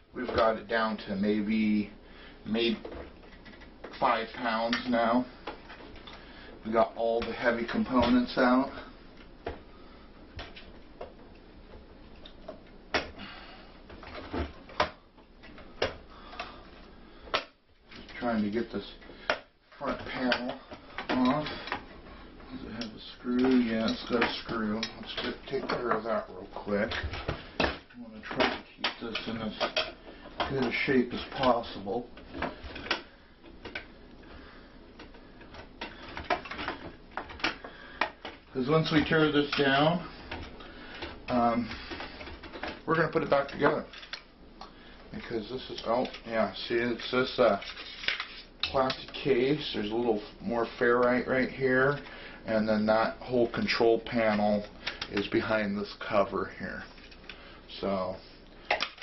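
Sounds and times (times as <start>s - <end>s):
knocks and clicks of handling: 35.0s - 44.8s.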